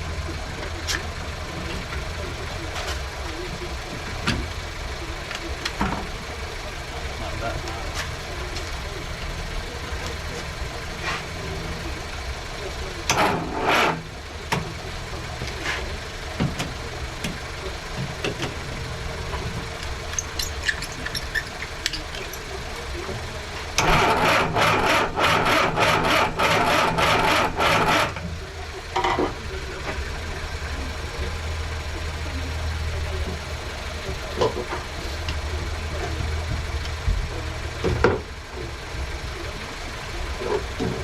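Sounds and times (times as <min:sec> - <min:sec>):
steady low hum: 0:00.0 - 0:41.0
engine cranking on starter motor: 0:12.9 - 0:14.7, 0:23.6 - 0:29.2.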